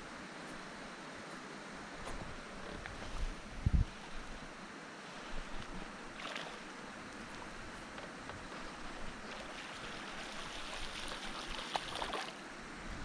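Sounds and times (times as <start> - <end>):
water lapping against boat hull: 5.4 - 12.4
bright water splashes: 6.1 - 7.6, 8.8 - 12.4.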